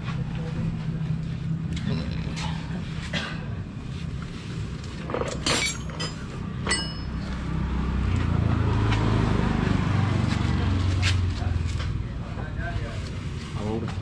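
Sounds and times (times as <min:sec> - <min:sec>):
sharp clinks: 0:05.4 - 0:07.4.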